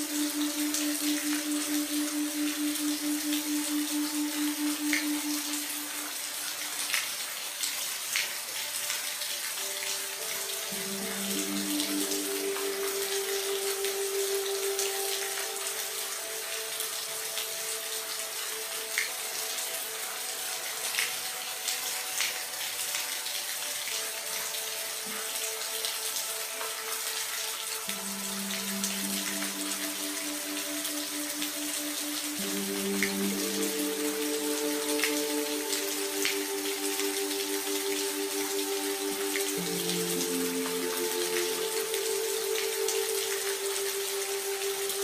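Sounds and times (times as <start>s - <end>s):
faint higher tones: 0.0s - 6.5s
rain hissing: 0.0s - 45.0s
raindrops splashing: 0.0s - 45.0s.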